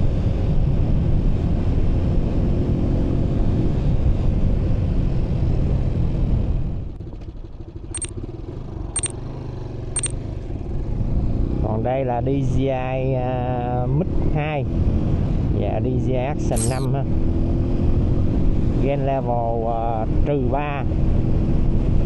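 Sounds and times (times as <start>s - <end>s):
short high electronic beeps: 16.6s - 16.9s.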